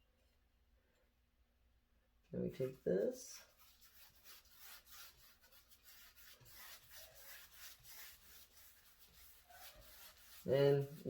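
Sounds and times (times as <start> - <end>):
paintbrush swishing on wall: 2.6 - 11.0.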